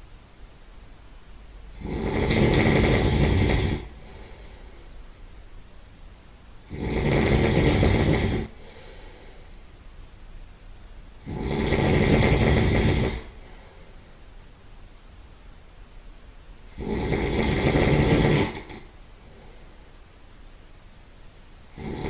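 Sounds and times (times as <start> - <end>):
man snoring loudly: 1.7 - 4.6, 6.6 - 9.2, 11.2 - 13.6, 16.7 - 19.0, 21.7 - 22.0.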